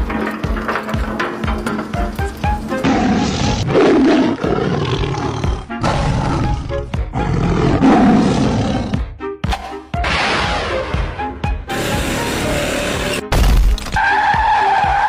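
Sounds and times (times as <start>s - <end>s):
background music: 0.0s - 15.0s
animal roars: 2.8s - 9.0s.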